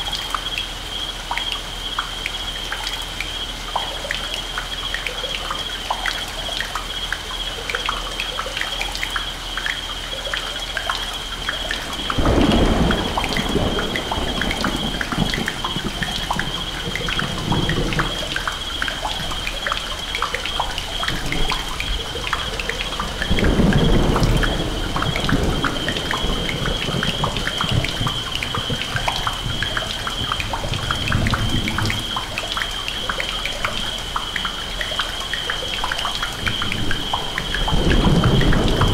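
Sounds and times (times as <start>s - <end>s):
rain: 0.0s - 38.9s
water drips ticking: 0.0s - 38.9s
thunder rolling: 11.9s - 19.4s, 21.1s - 32.3s, 36.3s - 38.9s.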